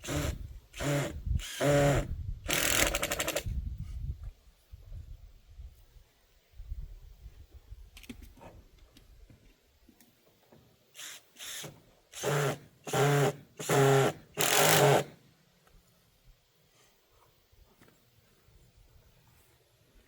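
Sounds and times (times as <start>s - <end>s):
power drill driving fasteners: 0.0s - 3.6s, 11.0s - 15.2s.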